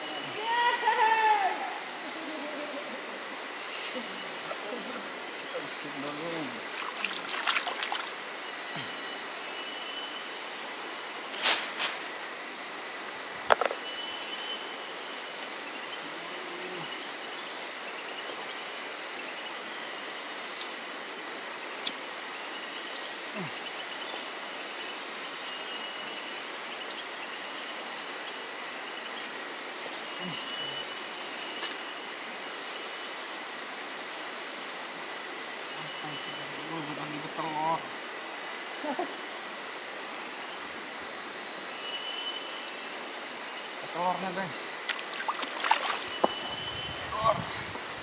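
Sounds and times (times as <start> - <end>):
insects buzzing: 0.0 - 48.0
river water rushing: 3.0 - 8.5, 44.6 - 46.6.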